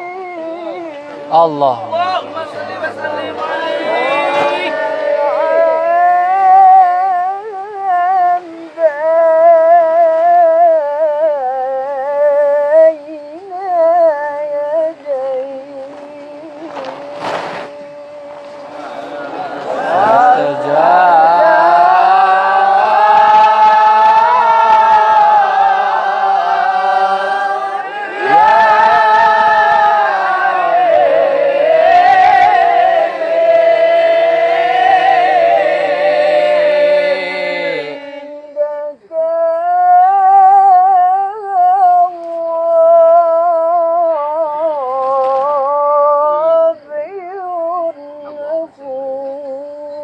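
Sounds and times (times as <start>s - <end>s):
person singing melismatic phrases: 19.6s - 42.2s.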